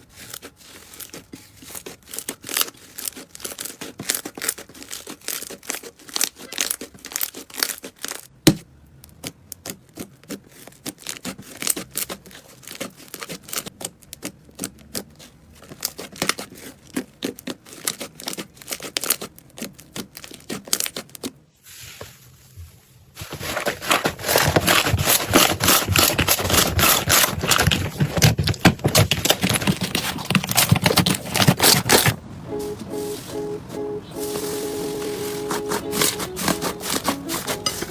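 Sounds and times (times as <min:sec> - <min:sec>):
slime crackling and popping: 0:00.0 - 0:21.4.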